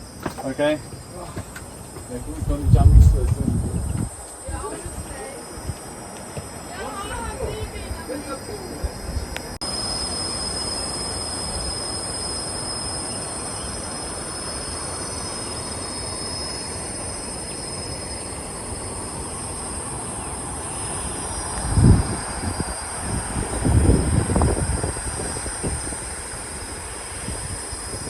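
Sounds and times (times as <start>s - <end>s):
constant rushing noise: 0.0s - 9.6s
insects buzzing: 0.0s - 28.0s.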